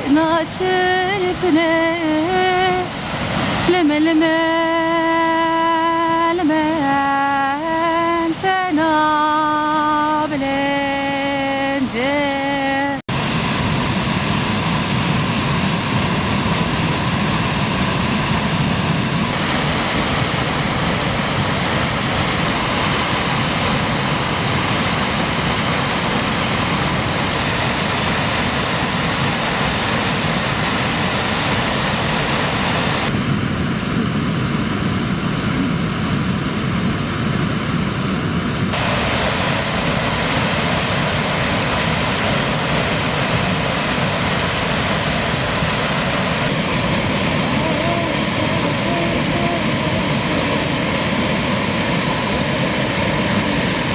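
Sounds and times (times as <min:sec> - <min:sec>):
waterfall rushing: 0:00.0 - 0:12.4, 0:13.0 - 0:33.4, 0:38.4 - 0:53.9.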